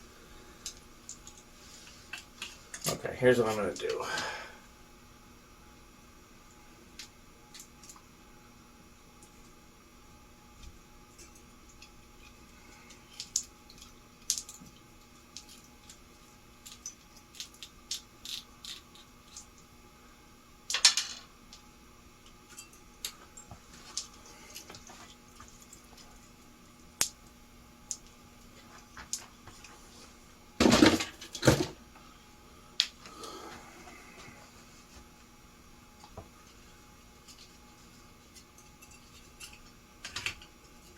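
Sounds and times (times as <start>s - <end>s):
clattering of small parts: 20.7s - 21.3s.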